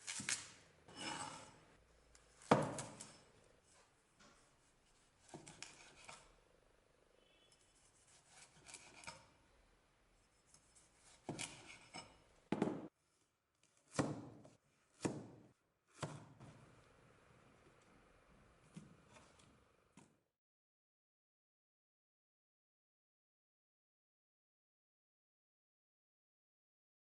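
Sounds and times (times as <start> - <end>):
cleaver chopping food: 11.1 - 11.8, 13.8 - 16.4.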